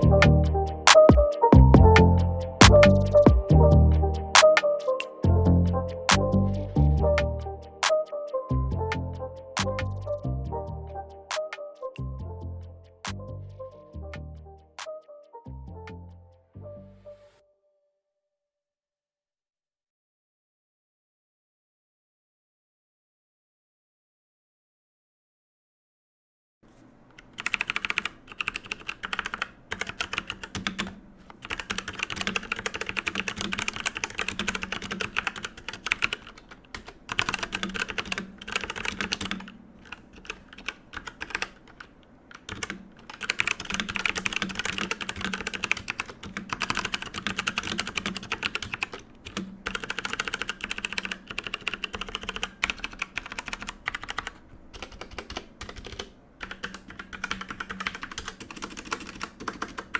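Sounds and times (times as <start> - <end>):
mechanical keyboard typing: 27.1 - 59.9.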